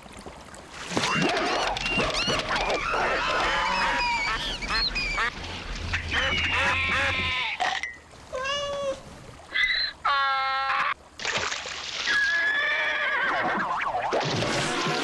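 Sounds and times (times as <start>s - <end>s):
cartoon creature squeaks and squawks: 1.2s - 5.3s, 5.9s - 7.7s.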